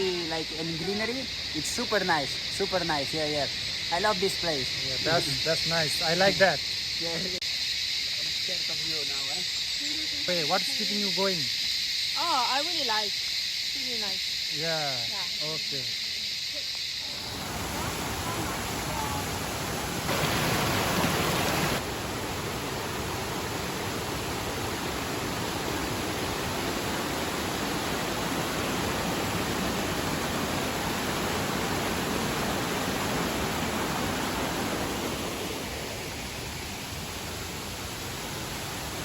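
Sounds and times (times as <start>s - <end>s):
rushing water: 17.1s - 39.0s.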